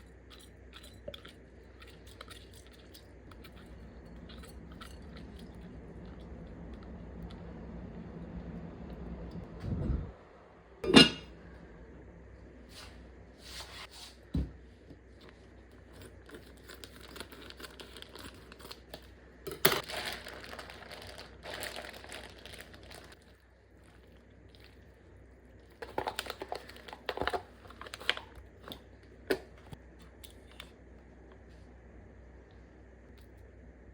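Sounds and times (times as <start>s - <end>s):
crinkling and rustling: 15.2s - 23.3s, 25.7s - 29.8s.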